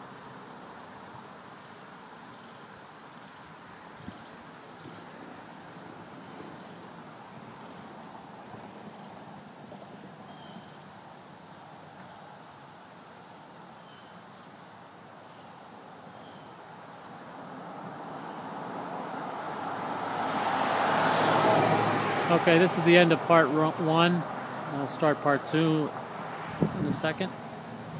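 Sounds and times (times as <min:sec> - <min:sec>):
background hiss: 0:00.0 - 0:27.9
insects chirping: 0:00.0 - 0:27.9
vehicle approaching: 0:17.2 - 0:27.9.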